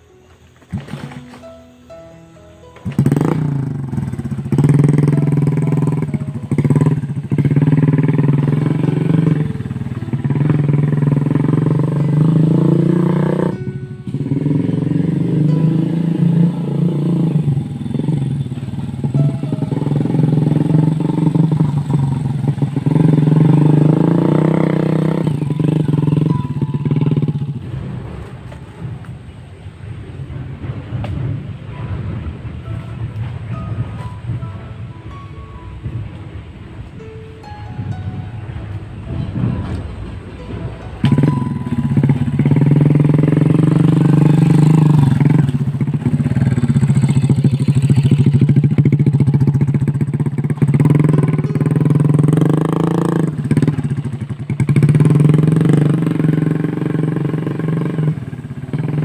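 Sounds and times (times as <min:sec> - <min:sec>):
small motorcycle engine revving: 0:02.8 - 0:28.5, 0:41.0 - 0:59.0.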